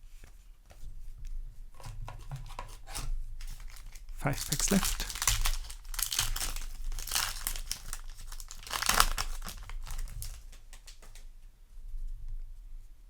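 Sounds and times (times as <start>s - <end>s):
foil wrapper crinkling: 1.8s - 11.3s.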